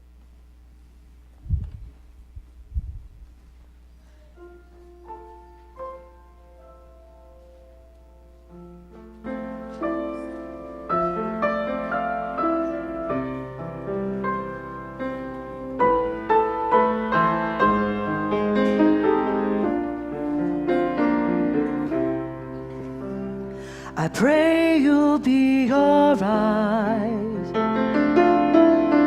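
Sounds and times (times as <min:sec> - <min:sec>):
short low thumps: 0:01.4 - 0:03.8
piano notes and chords: 0:04.1 - 0:29.0.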